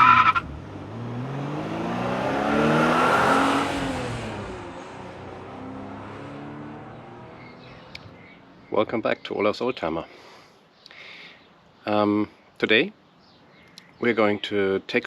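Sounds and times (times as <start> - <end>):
car engine revving past: 0.2 - 8.6.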